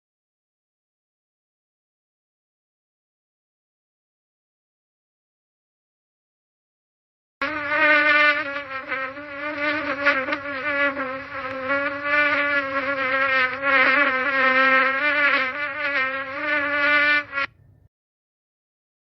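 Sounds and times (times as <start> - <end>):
housefly buzzing: 7.4 - 17.6.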